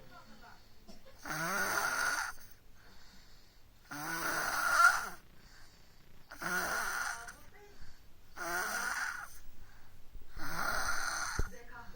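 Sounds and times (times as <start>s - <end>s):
baby snoring: 1.2s - 2.6s, 3.8s - 5.7s, 6.3s - 7.5s, 8.4s - 9.5s, 10.3s - 11.6s.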